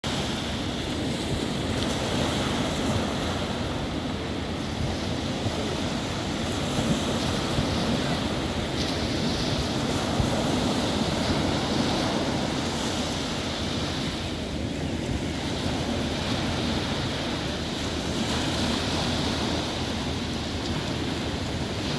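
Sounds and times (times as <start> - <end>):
sea waves breaking on beach: 0.0 - 21.9
wind buffeting microphone: 0.0 - 21.9.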